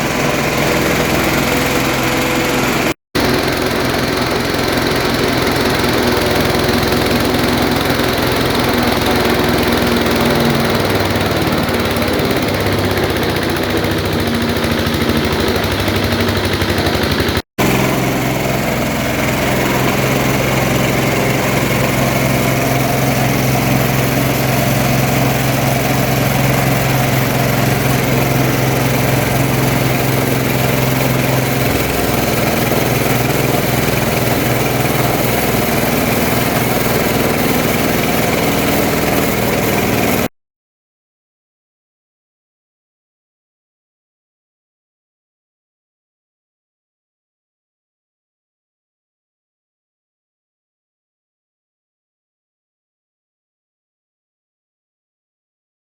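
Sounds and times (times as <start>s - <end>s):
grinding machine hum and rattle: 0.0s - 40.3s.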